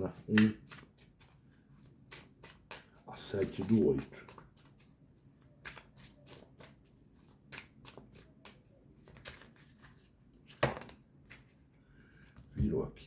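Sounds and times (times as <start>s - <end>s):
cards being shuffled: 2.1s - 11.6s.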